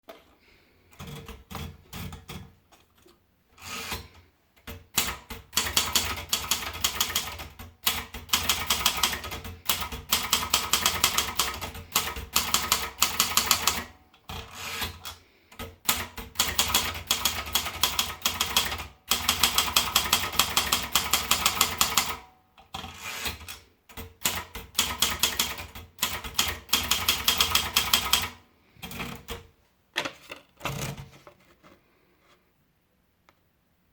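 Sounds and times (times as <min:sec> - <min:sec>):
typewriter keys clacking: 0:04.7 - 0:29.4.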